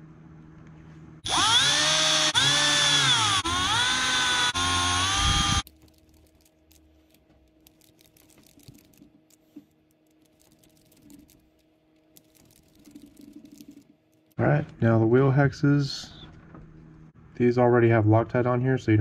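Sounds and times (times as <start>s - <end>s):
power screwdriver motor whining: 1.2s - 5.7s
light clicks of small parts: 5.6s - 14.4s.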